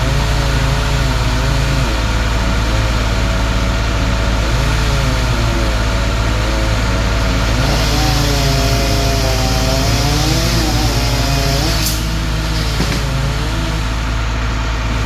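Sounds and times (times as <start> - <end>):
engine droning: 0.0 - 15.0.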